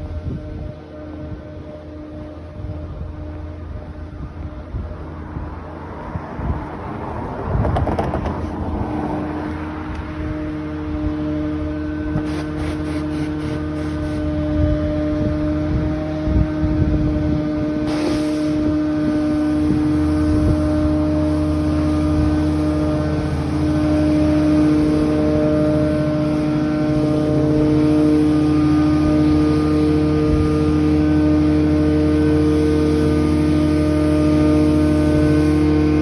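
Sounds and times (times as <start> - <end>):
heavy machinery droning: 0.0 - 36.0
hissing burst: 12.2 - 14.3, 17.8 - 20.1.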